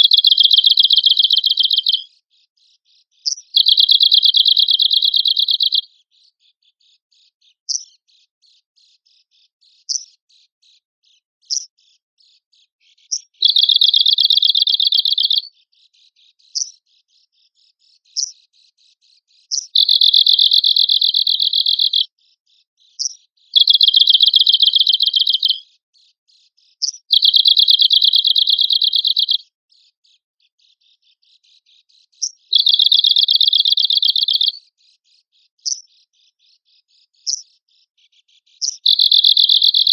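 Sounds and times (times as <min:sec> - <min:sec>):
bird dry rapid trills: 0:23.6 - 0:25.6, 0:32.5 - 0:34.5.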